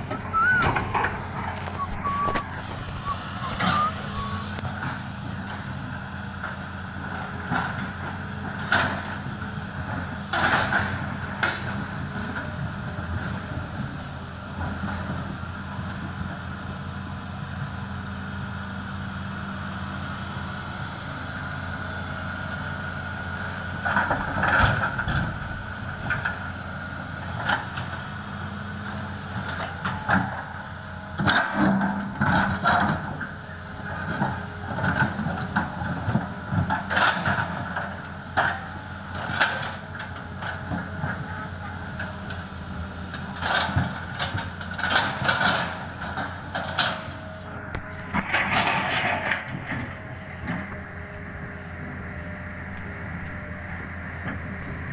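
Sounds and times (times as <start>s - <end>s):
excavator diesel engine: 0.0s - 54.9s.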